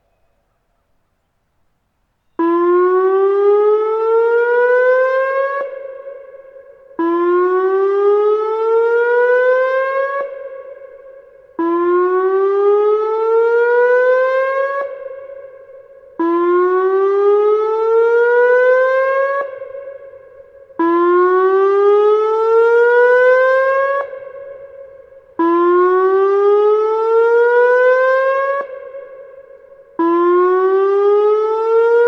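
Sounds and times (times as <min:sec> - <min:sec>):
warning siren whooping: 0:02.4 - 0:32.0.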